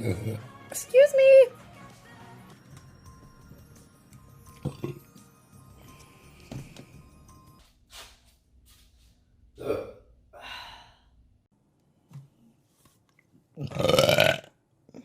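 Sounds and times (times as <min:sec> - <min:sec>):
breathy exhale: 0:10.4 - 0:11.2.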